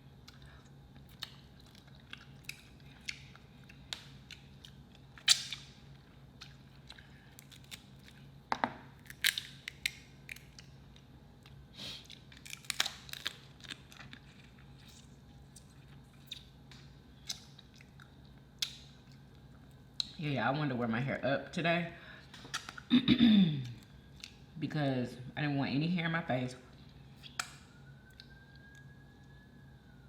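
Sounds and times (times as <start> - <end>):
wet chewing: 0.2 - 8.3.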